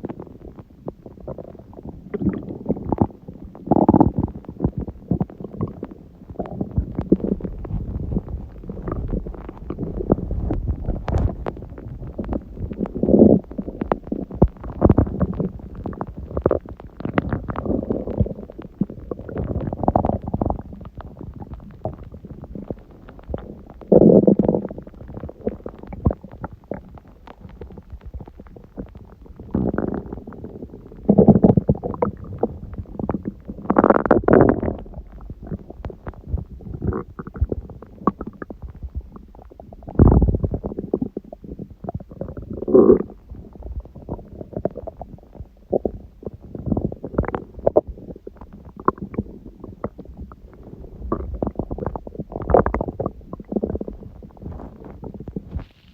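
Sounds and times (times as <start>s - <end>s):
stomach growling and gurgling: 0.0s - 55.9s
stomach pops: 0.0s - 55.9s.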